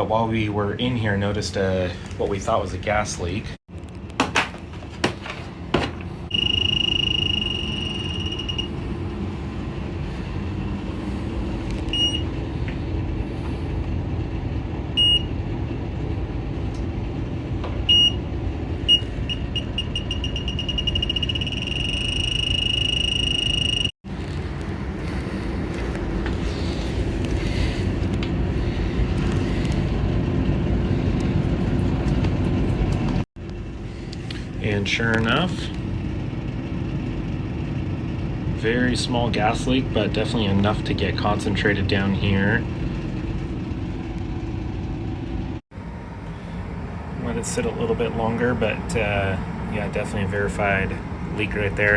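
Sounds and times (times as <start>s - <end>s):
steady low rumble: 6.1s - 51.9s
gas detector beeping: 6.3s - 8.8s, 11.9s - 12.4s, 15.0s - 15.3s, 17.8s - 18.2s, 18.8s - 23.9s
continuous alarm tone: 6.3s - 9.2s, 17.8s - 23.9s.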